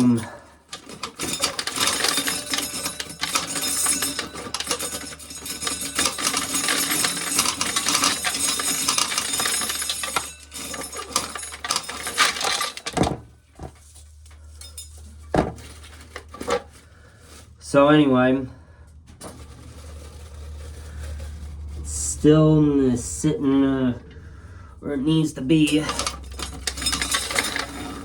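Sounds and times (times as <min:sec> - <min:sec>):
corn kernels rattling into metal can: 0:00.0 - 0:14.0, 0:15.3 - 0:17.5, 0:19.2 - 0:22.0, 0:25.7 - 0:28.0.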